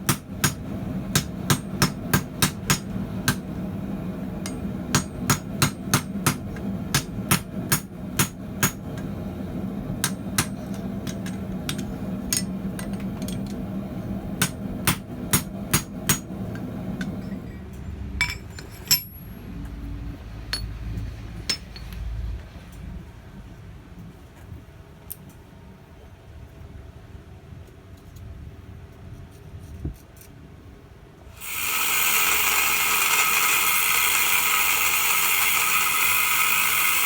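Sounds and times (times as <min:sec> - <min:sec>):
hammer striking steel on anvil: 0:00.0 - 0:03.5, 0:04.4 - 0:09.0, 0:10.0 - 0:13.6, 0:14.4 - 0:16.3
steady low hum: 0:00.0 - 0:24.0.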